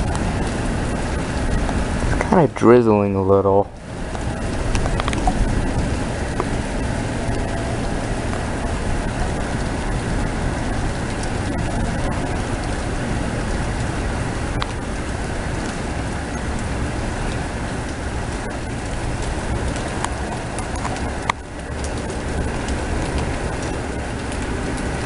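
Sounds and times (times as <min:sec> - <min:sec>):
low thunder rumble: 0:00.0 - 0:25.0
rain hiss: 0:00.0 - 0:25.0.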